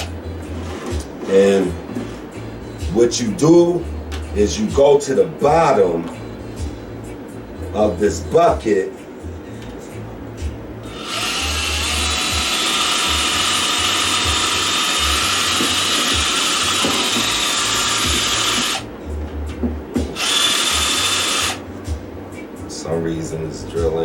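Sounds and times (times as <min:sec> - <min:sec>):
power drill boring plastic: 0:10.9 - 0:18.8, 0:20.2 - 0:21.6.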